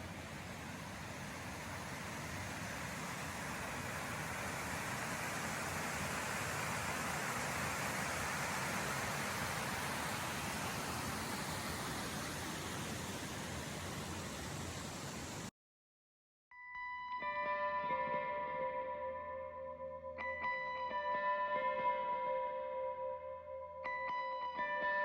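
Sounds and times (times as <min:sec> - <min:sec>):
waterfall roaring: 0:00.0 - 0:15.5.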